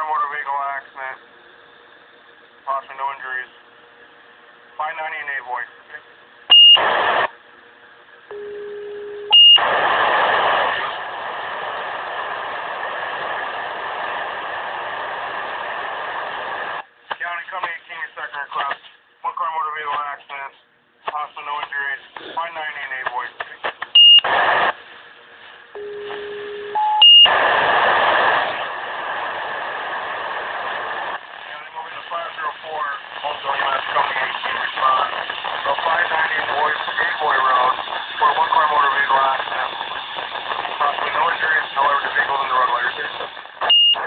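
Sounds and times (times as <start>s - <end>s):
radio static: 0.0s - 1.2s, 2.6s - 3.5s, 4.8s - 7.4s, 9.3s - 20.5s, 21.1s - 44.0s
loud high pager beep: 6.5s - 6.8s, 8.3s - 9.6s, 24.0s - 24.2s, 25.8s - 27.3s, 43.7s - 44.0s.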